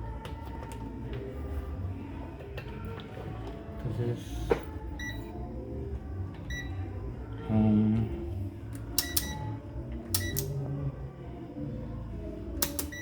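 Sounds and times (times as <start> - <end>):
multimeter beeps: 5.0 - 5.3, 6.5 - 6.8, 9.0 - 9.5, 10.2 - 10.5, 12.6 - 13.0.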